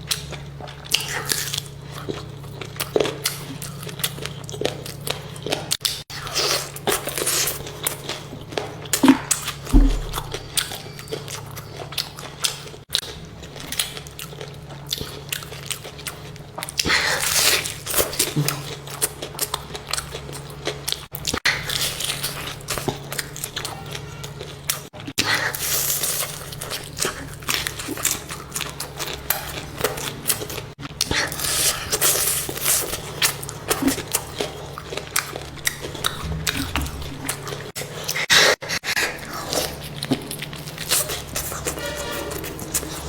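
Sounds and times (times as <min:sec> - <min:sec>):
chewing and crunching food: 0:00.0 - 0:43.0.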